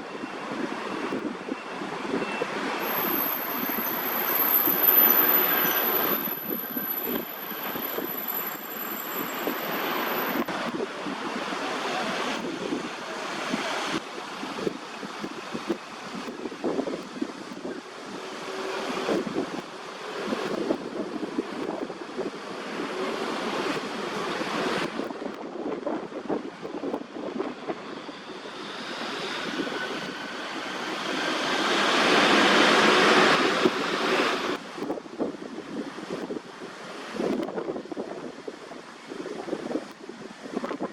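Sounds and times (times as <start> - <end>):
wind gusting through trees: 0.0 - 40.9
thin high-pitched whine: 2.8 - 10.5.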